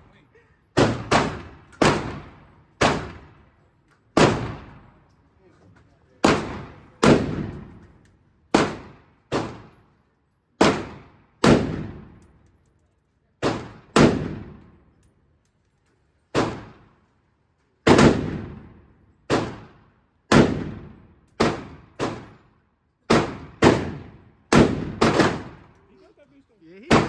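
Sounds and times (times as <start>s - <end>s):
gunshots with echo: 6.2s - 7.7s, 23.1s - 25.7s.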